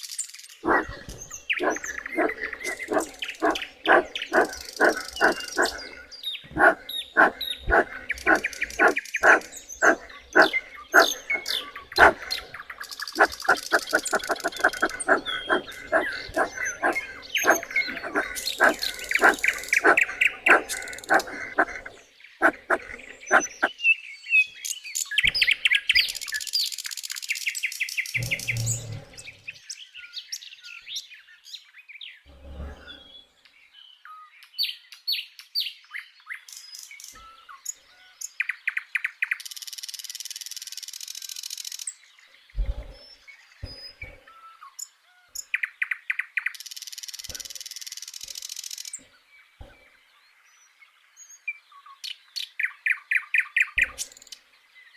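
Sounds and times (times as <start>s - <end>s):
birds calling: 0.5s - 24.5s
chirping trills: 0.6s - 23.7s.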